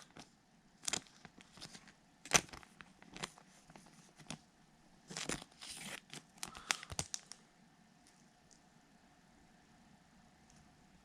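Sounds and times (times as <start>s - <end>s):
card packaging snaps and rustles: 0.8s - 4.4s, 5.1s - 7.4s.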